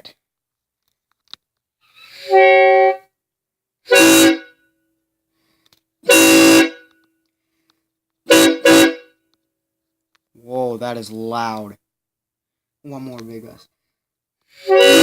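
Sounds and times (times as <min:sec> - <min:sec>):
train horn blasts: 0:02.2 - 0:03.1, 0:03.9 - 0:04.6, 0:06.0 - 0:07.0, 0:08.3 - 0:09.2, 0:14.6 - 0:15.0.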